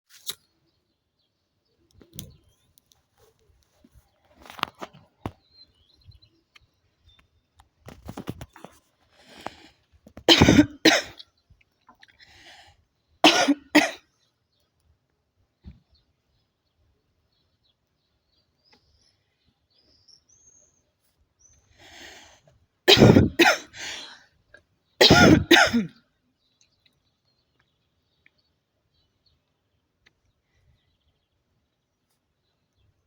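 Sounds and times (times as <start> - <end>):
woman coughing: 10.3 - 11.2, 13.3 - 14.0, 22.9 - 23.8, 25.0 - 25.9.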